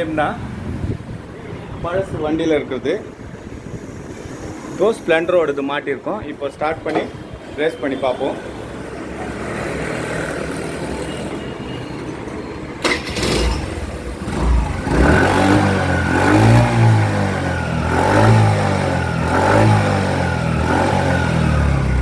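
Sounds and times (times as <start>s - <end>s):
scooter engine starting and revving: 12.8s - 22.0s.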